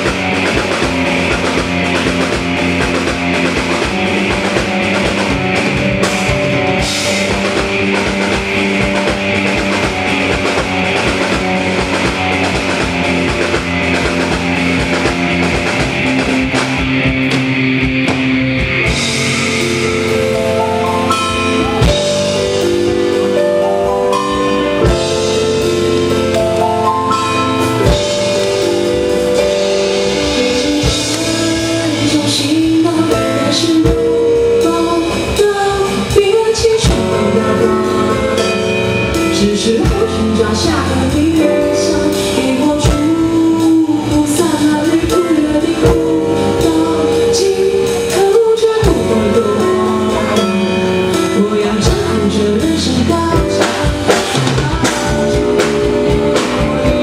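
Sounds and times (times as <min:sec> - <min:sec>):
live rock band playing: 0:00.0 - 0:57.0.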